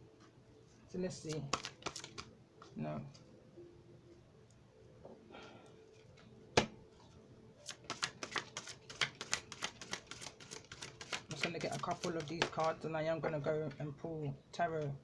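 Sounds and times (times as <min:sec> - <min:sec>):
cards shuffling clicks: 0:01.2 - 0:02.3, 0:07.6 - 0:12.8.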